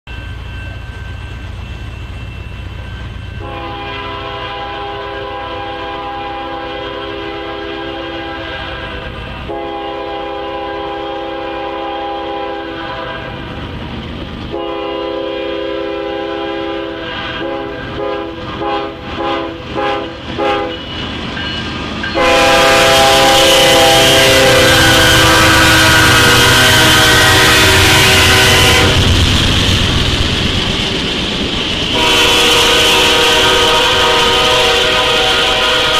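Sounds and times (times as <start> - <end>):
low rumble of locomotive engines: 0.1 - 35.9
train wheel noise rushing: 0.1 - 35.9
locomotive air horn: 3.4 - 13.4, 14.5 - 20.8, 22.2 - 29.1, 31.9 - 35.9.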